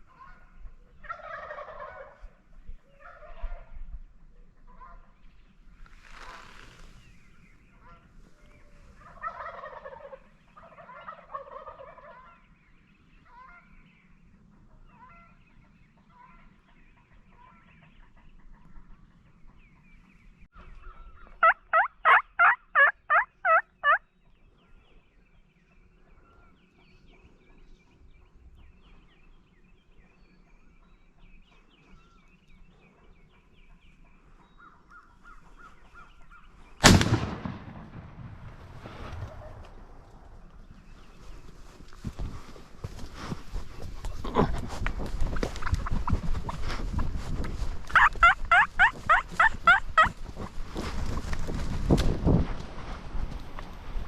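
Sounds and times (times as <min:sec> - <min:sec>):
turkey gobbling: 0:01.0 - 0:02.3, 0:03.0 - 0:03.6, 0:09.0 - 0:12.4, 0:21.2 - 0:24.0, 0:45.4 - 0:46.8, 0:47.9 - 0:50.2
turkey yelps: 0:09.0 - 0:12.4, 0:20.9 - 0:24.0, 0:47.9 - 0:50.1.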